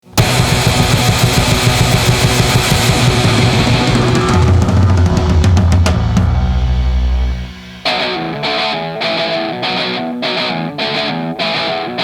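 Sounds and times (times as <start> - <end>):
heavy rock band playing: 0.0 - 11.7
sharp drum hits: 0.1 - 8.5.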